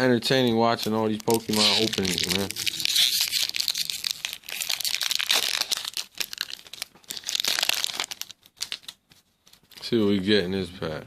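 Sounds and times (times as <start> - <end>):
foil wrapper crinkling and tearing: 0.8 - 9.9.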